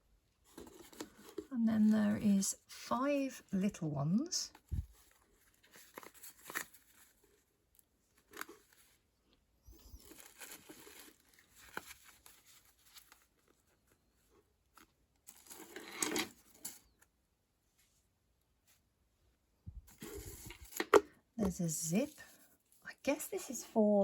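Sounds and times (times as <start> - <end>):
packaging rustling: 4.6 - 7.4, 9.8 - 14.0, 14.7 - 17.0.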